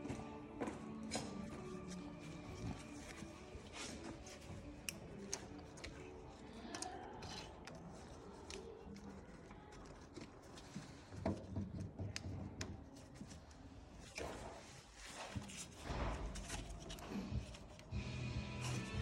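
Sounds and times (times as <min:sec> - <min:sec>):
music: 0:00.0 - 0:07.7, 0:16.1 - 0:19.0
rustling and scraping: 0:00.0 - 0:19.0.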